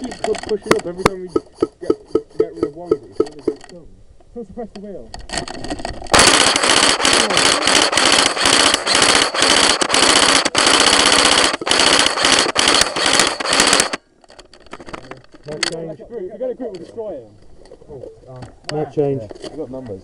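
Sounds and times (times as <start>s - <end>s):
airsoft rifle firing full auto: 6.1s - 14.0s.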